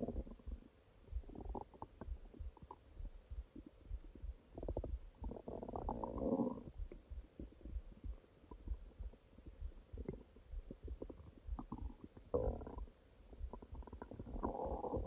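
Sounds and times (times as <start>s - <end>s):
stomach growling: 0.0s - 0.6s, 1.2s - 2.8s, 4.5s - 7.8s, 10.0s - 15.0s.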